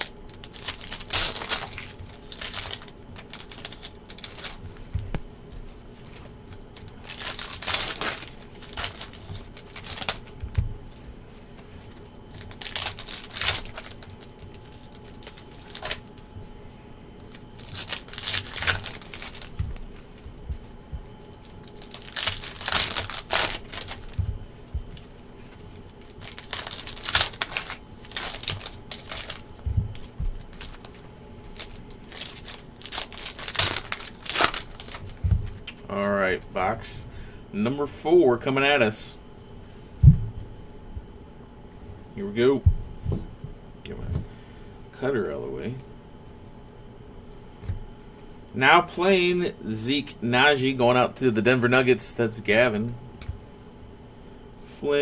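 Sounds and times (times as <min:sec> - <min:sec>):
card packs being torn open: 0:00.0 - 0:04.9, 0:05.6 - 0:16.3, 0:17.2 - 0:20.3, 0:21.3 - 0:36.2
foil wrappers crinkling: 0:00.0 - 0:38.0.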